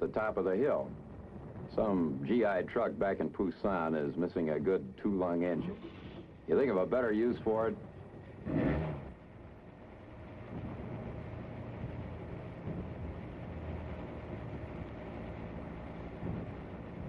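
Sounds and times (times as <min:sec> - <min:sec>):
truck engine running: 0:00.0 - 0:17.0.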